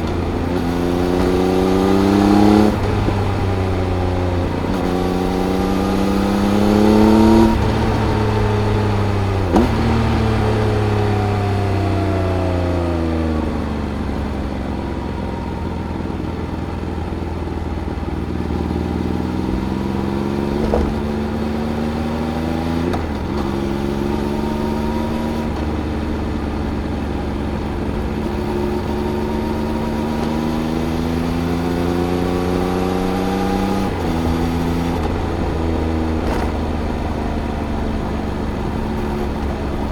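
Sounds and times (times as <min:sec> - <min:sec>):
gear shift click: 0:00.0 - 0:10.8, 0:20.5 - 0:21.2, 0:32.6 - 0:39.9
motorcycle engine at speed: 0:00.0 - 0:39.9.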